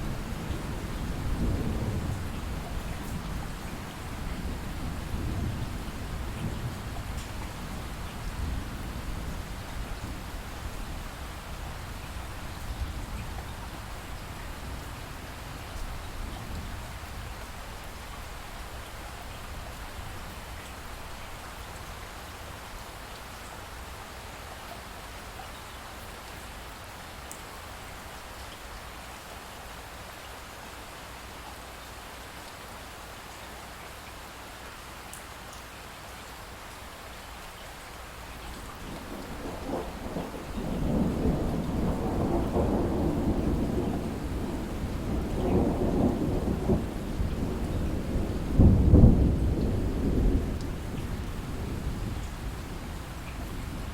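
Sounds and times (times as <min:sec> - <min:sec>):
light rain falling: 0:00.0 - 0:53.9
thunder rolling: 0:38.8 - 0:53.9.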